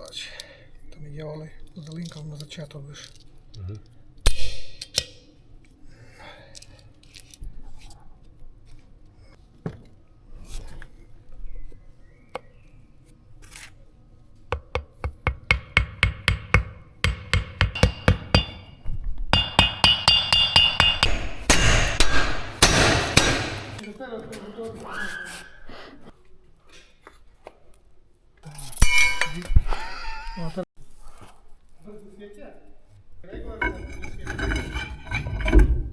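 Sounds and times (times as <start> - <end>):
ringing metal clatter: 19.4 - 23.8.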